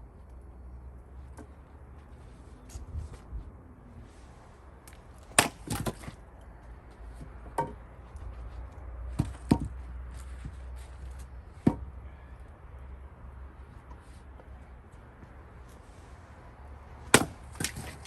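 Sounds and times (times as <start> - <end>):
wood crackling as it splits: 4.8 - 6.2, 17.0 - 18.0
axe chopping wood: 5.2 - 6.2, 9.2 - 9.8, 11.6 - 11.9, 17.0 - 18.0.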